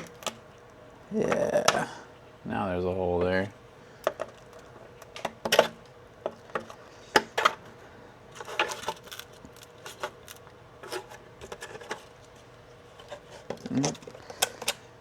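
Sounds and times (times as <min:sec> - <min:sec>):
hand tool clicking and scraping plastic: 0:08.4 - 0:12.1.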